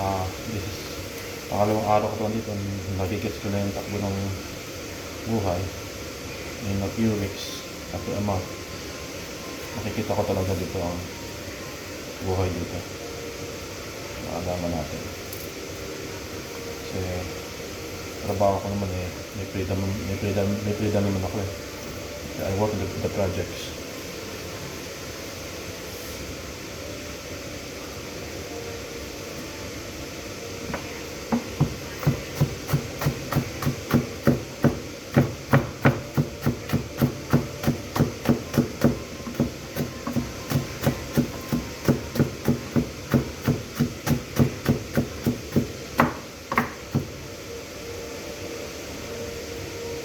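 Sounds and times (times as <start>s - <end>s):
steady background hum: 0.0s - 50.0s
knife chopping on cutting board: 31.3s - 47.2s.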